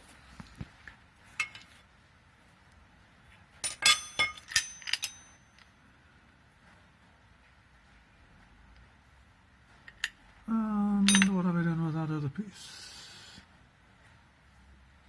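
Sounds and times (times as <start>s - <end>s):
metal parts clinking: 3.6s - 5.6s, 11.0s - 11.5s.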